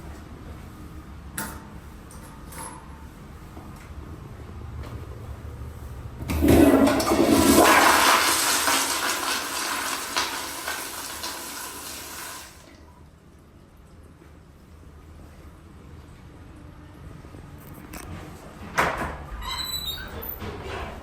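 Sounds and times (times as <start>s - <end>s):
toilet flushing: 6.2s - 13.1s.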